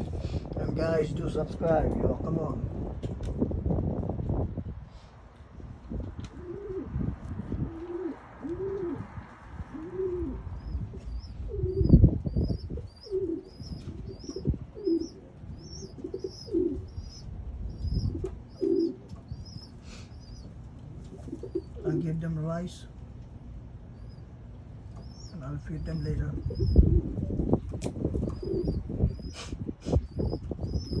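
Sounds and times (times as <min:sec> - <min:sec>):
pigeons cooing: 0:06.3 - 0:22.2, 0:23.9 - 0:31.0
small bird chirping rapidly: 0:10.6 - 0:20.6, 0:25.0 - 0:26.9, 0:28.2 - 0:31.0.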